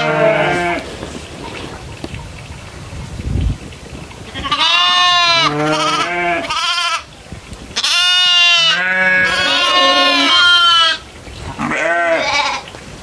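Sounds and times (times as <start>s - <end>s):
goats bleating: 0.0s - 0.9s, 4.3s - 7.1s, 7.8s - 11.0s, 11.6s - 12.7s.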